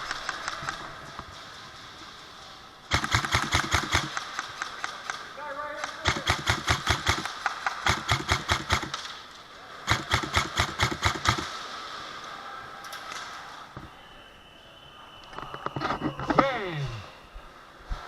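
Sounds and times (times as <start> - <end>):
airsoft gun firing bursts: 2.9 - 9.2, 9.9 - 11.7.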